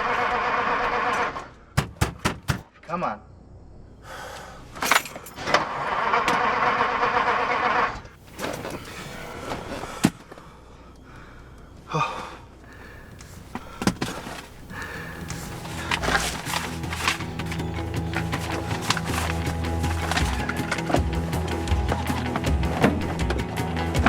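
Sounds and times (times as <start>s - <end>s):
car starter cranking: 13.0s - 20.9s.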